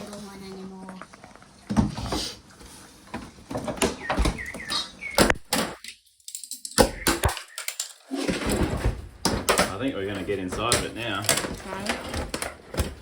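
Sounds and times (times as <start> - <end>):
knocks and rattles of casing parts: 3.1 - 13.0.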